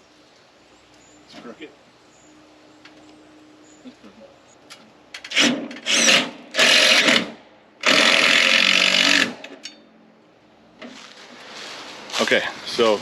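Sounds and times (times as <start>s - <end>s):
power drill driving screws: 5.3s - 9.4s.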